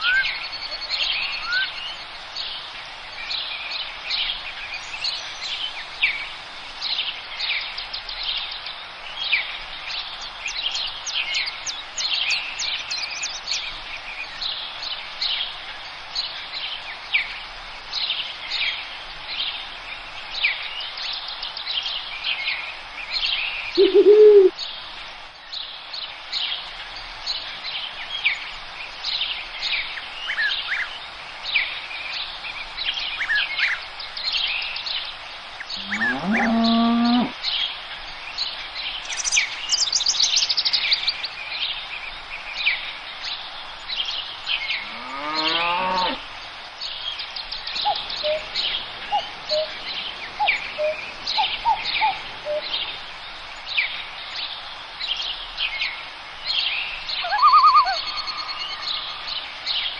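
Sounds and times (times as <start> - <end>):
songbirds chirping and trilling: 0.0 - 59.9
short low bird call: 23.8 - 24.5, 57.2 - 58.8.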